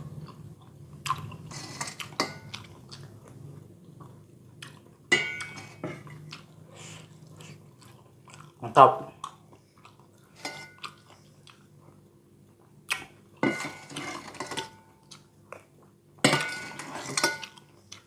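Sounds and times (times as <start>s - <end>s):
person chewing: 0.1s - 13.2s, 15.0s - 16.0s.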